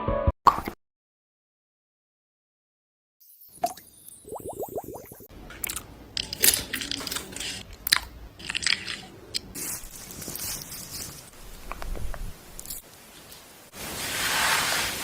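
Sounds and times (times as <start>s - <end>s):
sharp clicks and crackles: 5.4s - 11.1s
rustling: 5.4s - 15.0s.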